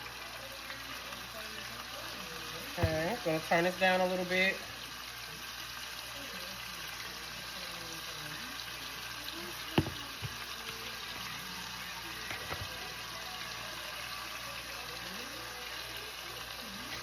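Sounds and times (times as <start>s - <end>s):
patties sizzling in a pan: 0.0s - 17.0s.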